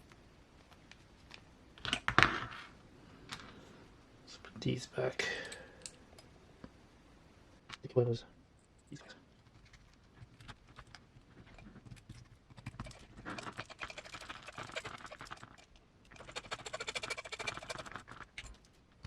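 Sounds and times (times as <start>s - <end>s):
clicking and rattling of small parts: 9.5s - 19.0s.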